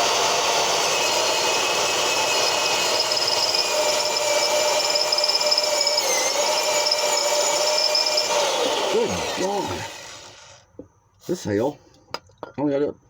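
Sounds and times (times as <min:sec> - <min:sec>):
power drill drilling into steel: 0:00.0 - 0:10.7.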